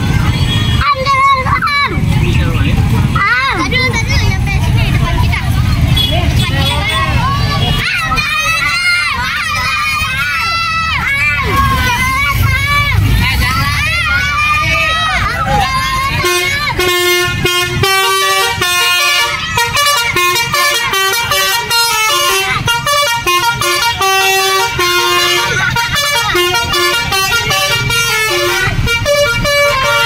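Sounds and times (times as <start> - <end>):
multi-tone bus horn tune: 0.0 - 0.9, 5.9 - 7.9, 14.0 - 30.0
bus engine rumble: 0.0 - 30.0.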